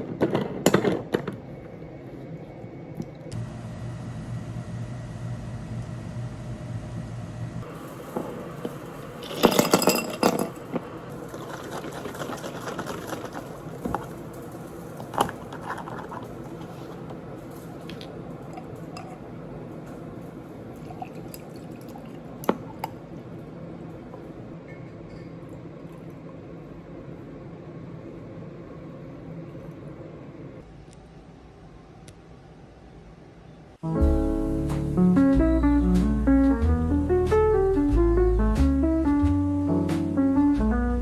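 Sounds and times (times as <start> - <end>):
dishes clattering: 0.0 - 1.5, 7.9 - 23.4, 24.0 - 26.0
liquid pouring: 7.6 - 27.1
glass and dishes clinking: 7.9 - 12.2, 12.9 - 23.0, 24.1 - 26.2.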